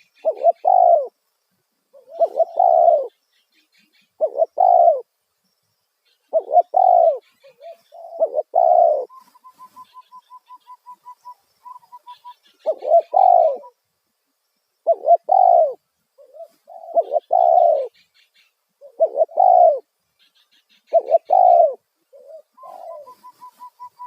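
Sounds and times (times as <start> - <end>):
dove cooing: 0.0 - 1.1, 1.9 - 3.2, 4.2 - 5.1, 6.2 - 13.8, 14.8 - 18.0, 18.8 - 19.9, 20.8 - 24.0.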